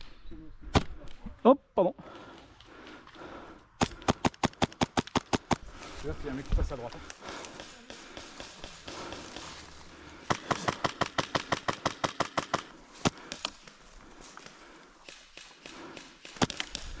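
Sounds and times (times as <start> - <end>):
airsoft gun shots: 3.8 - 5.6, 10.3 - 13.4.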